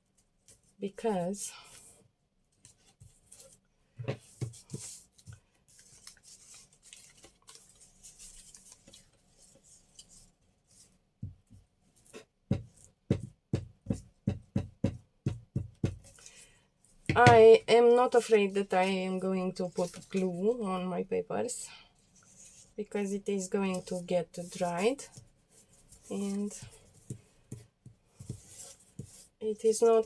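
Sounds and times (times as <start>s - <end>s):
paper rustling: 4.2s - 11.0s.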